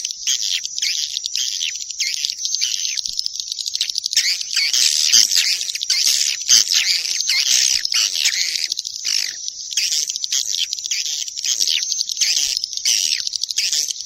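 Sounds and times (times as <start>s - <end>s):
swiftlets twittering: 0.0s - 14.0s.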